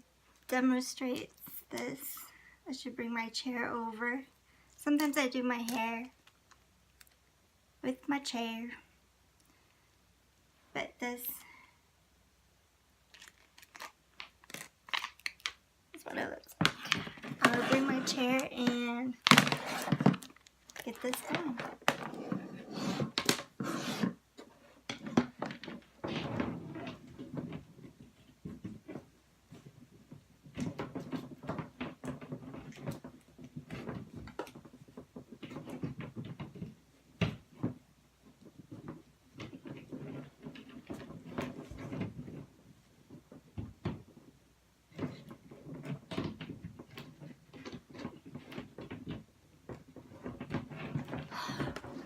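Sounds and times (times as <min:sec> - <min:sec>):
furniture and objects being moved: 0:16.6 - 0:44.3, 0:44.9 - 0:52.0.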